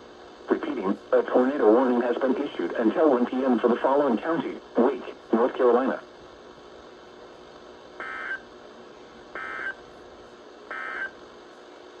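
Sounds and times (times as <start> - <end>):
faint radio hiss: 0.0 - 12.0
warbling digital data tones: 10.7 - 11.2.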